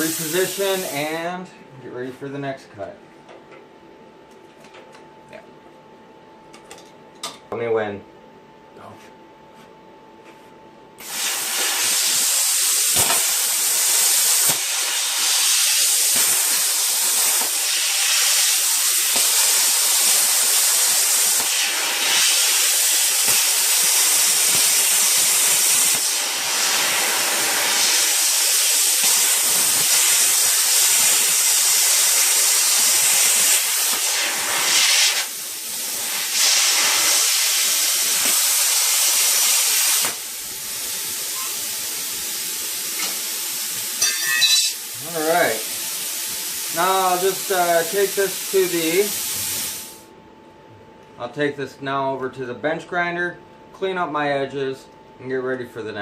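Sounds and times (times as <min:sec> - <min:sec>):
plasma cutter hissing: 0:00.0 - 0:01.2, 0:11.0 - 0:50.0.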